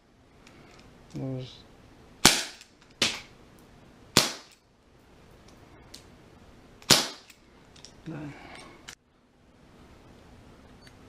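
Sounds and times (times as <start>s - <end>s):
air pistol shots popping: 2.2s - 3.3s, 4.1s - 4.6s, 6.8s - 7.4s.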